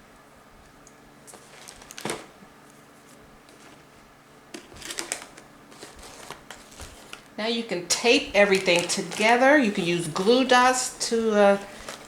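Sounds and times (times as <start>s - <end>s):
ribbon rustling and crackling: 4.6s - 12.0s.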